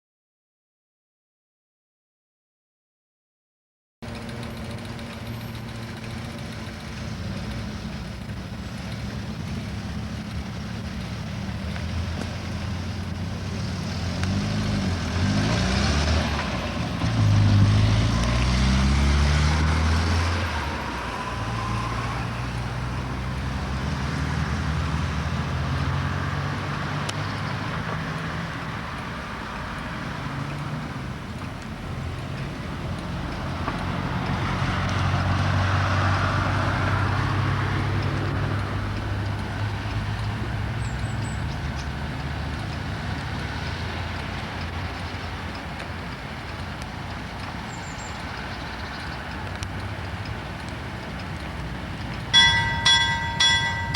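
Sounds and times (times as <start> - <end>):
vehicle engine droning past: 4.0 - 31.3, 31.9 - 45.2, 52.3 - 53.9.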